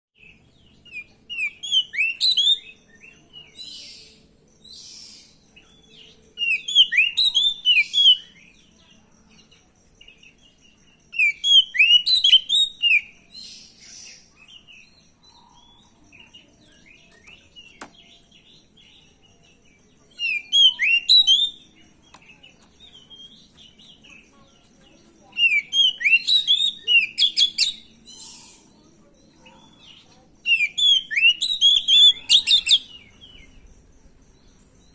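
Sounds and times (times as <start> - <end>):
bird chirping rapidly: 6.4 - 8.4, 10.4 - 16.0, 20.2 - 24.2, 25.2 - 28.8, 29.5 - 33.9.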